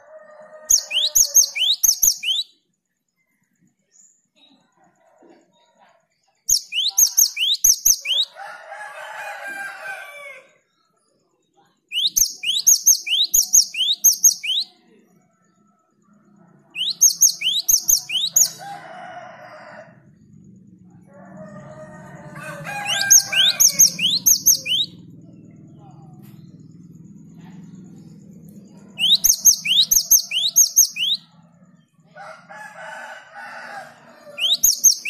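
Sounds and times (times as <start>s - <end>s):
harsh chattering bird call: 0.7s - 2.5s, 6.5s - 8.3s, 11.9s - 14.7s, 16.8s - 18.6s, 22.4s - 25.4s, 28.9s - 31.2s, 34.3s - 35.0s
bird whistling song: 0.7s - 2.6s, 6.5s - 8.3s, 11.9s - 14.7s, 16.8s - 18.6s, 22.8s - 25.0s, 28.9s - 31.3s, 34.4s - 35.0s.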